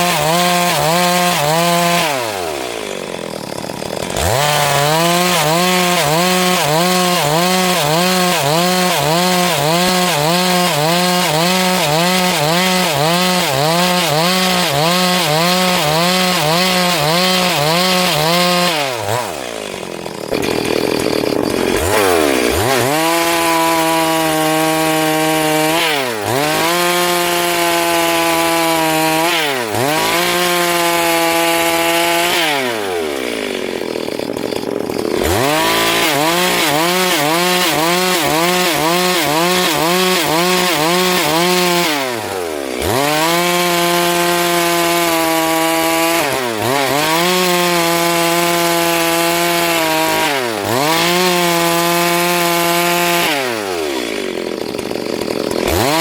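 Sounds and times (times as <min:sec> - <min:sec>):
chainsaw cutting through log: 0:00.0 - 0:56.0.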